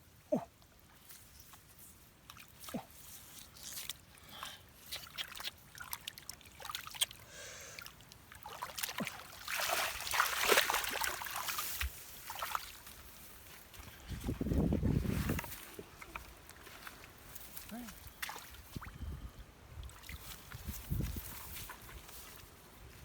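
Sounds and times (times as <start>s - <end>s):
splashing in muddy water: 2.2s - 7.2s, 7.8s - 13.1s, 17.5s - 19.1s, 19.7s - 22.5s.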